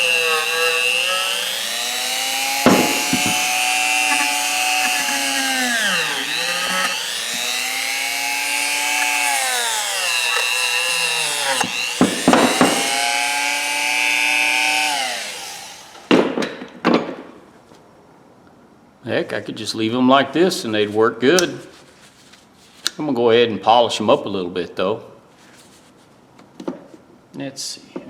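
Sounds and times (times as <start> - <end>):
electric power tool motor: 0.0 - 16.2
sharp knocks: 2.6 - 5.3, 11.5 - 13.2, 15.4 - 17.3.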